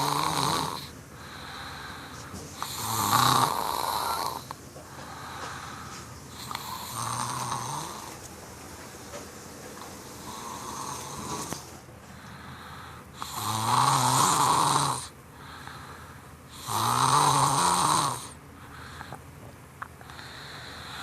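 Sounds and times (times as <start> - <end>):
loud snores: 0.0 - 1.9, 2.6 - 8.2, 10.0 - 11.7, 13.1 - 15.7, 16.5 - 18.4
soft breathing: 0.8 - 2.9, 3.7 - 13.3, 15.3 - 16.5, 18.5 - 21.0.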